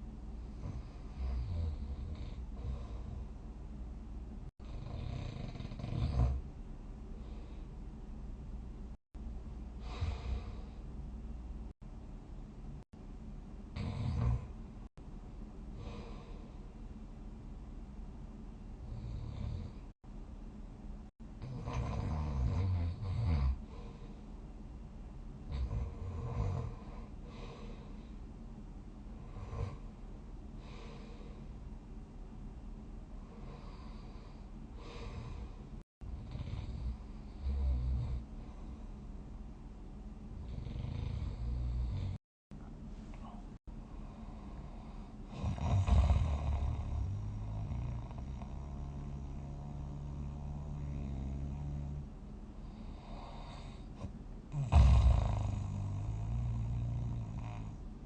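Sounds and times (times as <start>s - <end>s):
person snoring: 0.6s - 3.3s, 4.6s - 6.4s, 9.8s - 10.8s, 13.8s - 14.6s, 21.4s - 24.0s, 40.4s - 42.2s, 44.3s - 52.1s, 52.7s - 57.8s.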